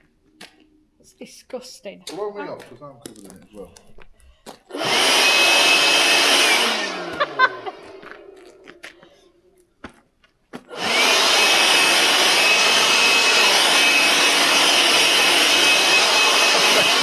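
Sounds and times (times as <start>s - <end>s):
leaf blower whining: 4.7s - 8.8s, 10.7s - 17.0s.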